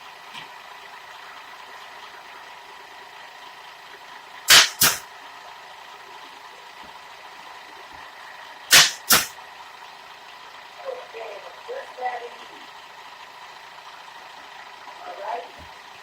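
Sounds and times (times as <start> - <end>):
sharp loud bangs: 4.5 - 5.0, 8.7 - 9.3.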